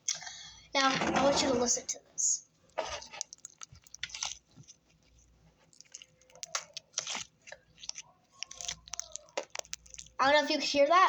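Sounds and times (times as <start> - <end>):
slime clicks and crackles: 2.8 - 10.2.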